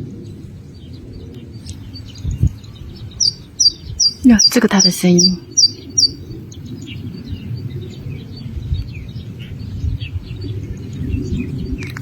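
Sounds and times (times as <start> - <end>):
small bird chirping: 1.5 - 7.4.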